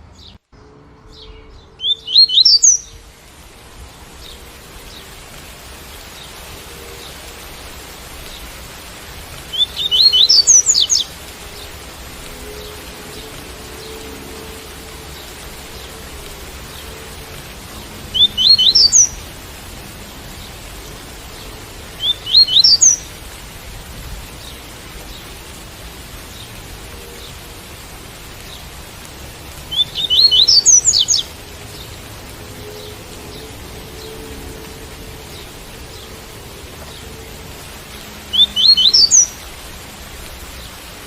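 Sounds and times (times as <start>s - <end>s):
bird whistling song: 1.1s - 3.0s, 9.5s - 11.1s, 18.1s - 19.2s, 22.0s - 23.1s, 29.7s - 31.3s, 38.3s - 39.4s
rain hiss: 1.8s - 41.0s.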